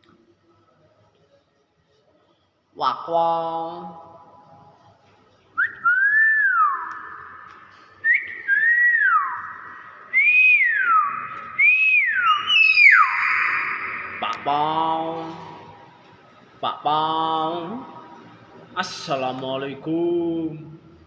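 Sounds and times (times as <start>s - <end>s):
myna bird whistling: 8.0s - 14.4s.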